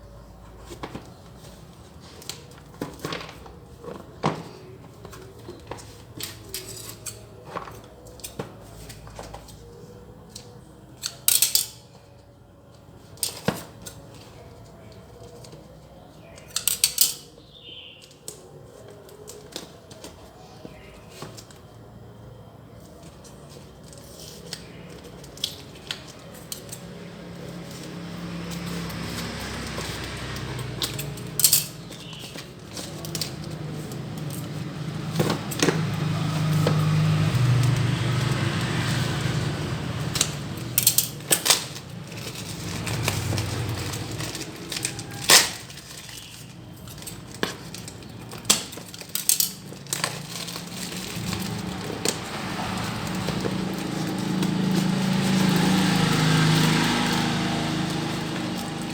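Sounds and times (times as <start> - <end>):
cardboard and plastic crackling: 0.1 - 10.7, 22.8 - 58.9.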